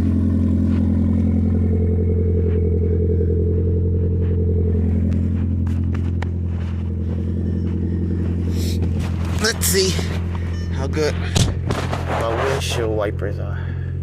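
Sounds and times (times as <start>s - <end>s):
car engine idling: 0.0s - 14.0s.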